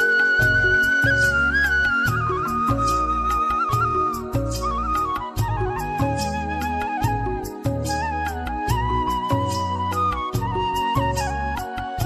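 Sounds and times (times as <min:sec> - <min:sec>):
flute-like melody: 0:00.0 - 0:12.0
plucked accompaniment: 0:00.0 - 0:12.0
steady bass: 0:00.4 - 0:11.7.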